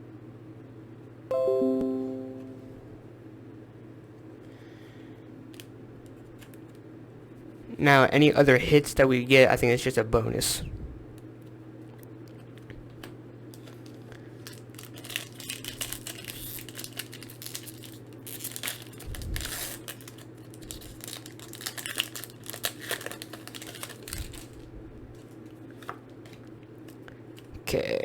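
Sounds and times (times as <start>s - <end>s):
foil wrapper crinkling and tearing: 13.5s - 25.3s.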